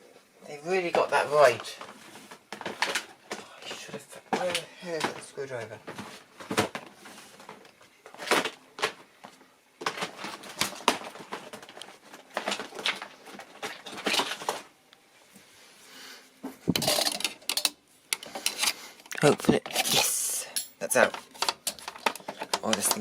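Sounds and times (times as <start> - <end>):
clicks and clatter of small tools: 16.8 - 23.0.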